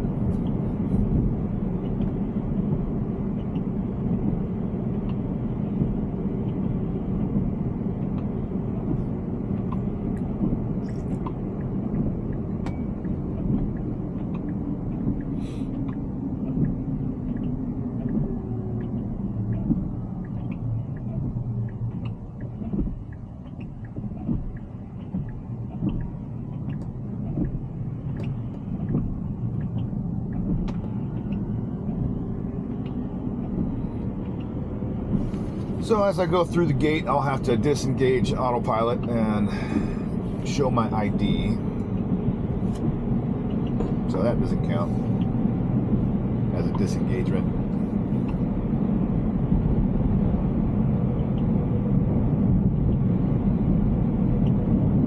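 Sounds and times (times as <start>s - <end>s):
tyre and road noise: 0.0s - 55.0s
faint ticks: 8.0s - 35.7s.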